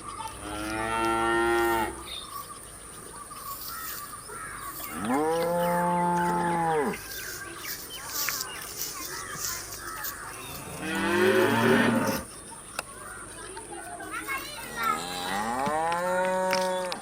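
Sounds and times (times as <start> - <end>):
cow mooing: 0.4 - 2.0, 5.0 - 7.0, 10.6 - 12.3, 14.9 - 16.9.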